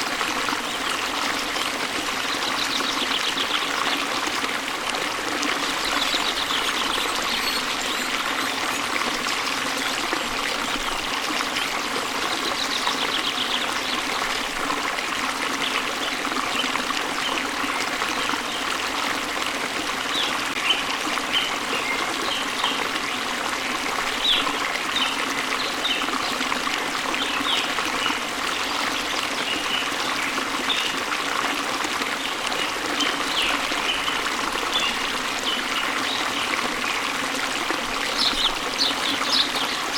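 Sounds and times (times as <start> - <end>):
small birds chirping: 5.6 - 8.8, 38.1 - 39.9.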